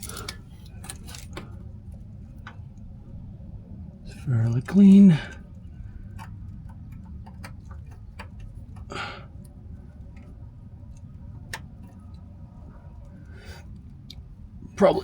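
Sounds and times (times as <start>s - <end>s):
steady low hum: 0.0s - 15.0s
clicks and taps on engine parts: 4.4s - 13.2s.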